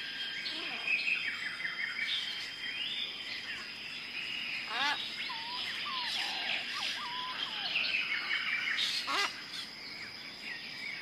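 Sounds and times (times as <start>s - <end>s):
birds calling and chirping: 0.0s - 11.0s
bird call with stacked tones: 4.7s - 8.2s.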